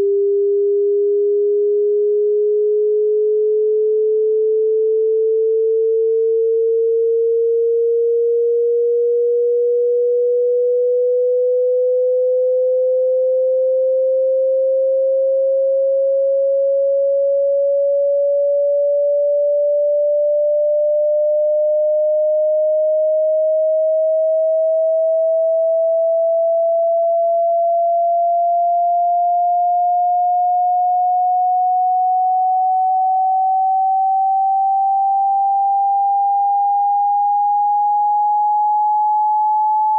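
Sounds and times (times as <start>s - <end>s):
sine tone sweeping upward: 0.0s - 39.9s.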